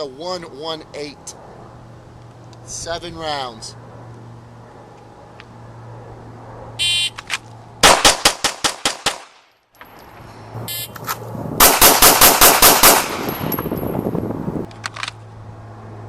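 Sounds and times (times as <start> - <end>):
rapid pistol shots: 7.8 - 9.4, 11.6 - 13.3.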